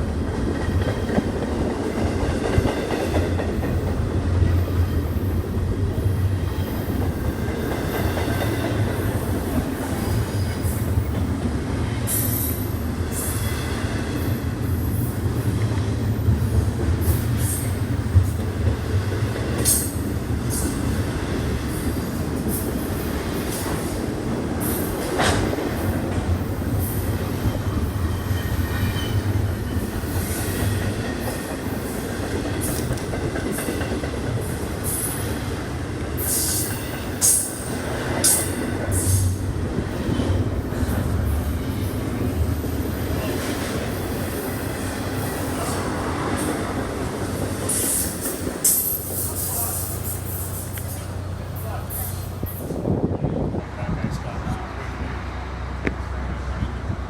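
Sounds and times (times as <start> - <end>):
rail clicks: 0.0 - 56.9
train rumbling past: 0.0 - 57.0.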